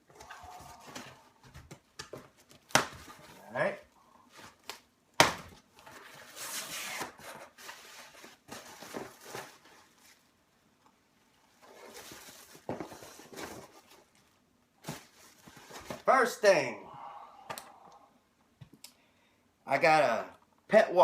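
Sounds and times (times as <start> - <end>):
packaging rustling and crinkling: 5.8 - 10.3, 11.6 - 16.1.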